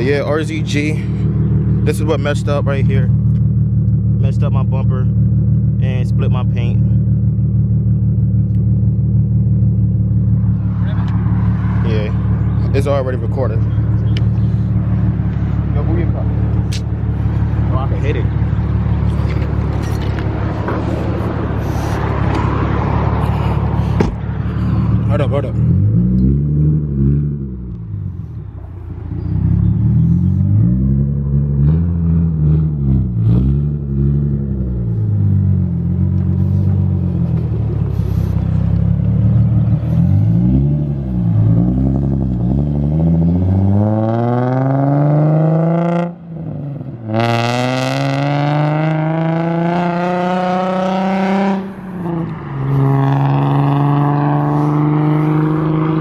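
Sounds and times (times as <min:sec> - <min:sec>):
car engine revving: 0:00.0 - 0:56.0
car accelerating through gears: 0:29.2 - 0:56.0.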